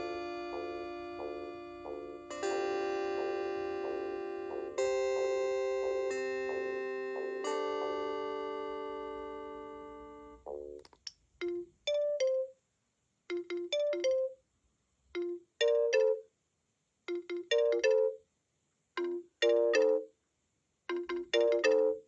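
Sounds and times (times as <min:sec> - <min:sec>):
cordless phone ringtones: 0:13.3 - 0:14.4, 0:17.1 - 0:18.2, 0:20.9 - 0:22.0.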